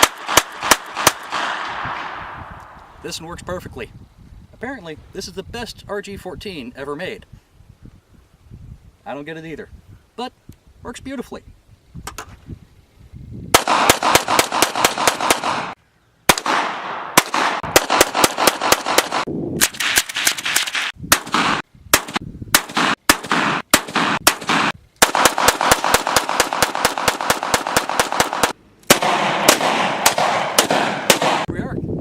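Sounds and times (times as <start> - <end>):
rapid gunshots: 0.0 - 2.3, 13.5 - 31.5
wind noise on microphone: 0.2 - 15.3, 17.6 - 28.2, 29.3 - 32.0.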